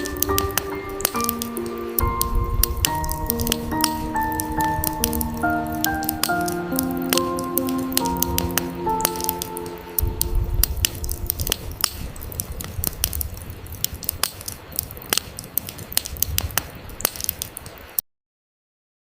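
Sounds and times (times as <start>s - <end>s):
soft music: 0.0s - 12.4s
campfire crackling and popping: 0.0s - 18.0s
low rumble: 9.7s - 14.3s.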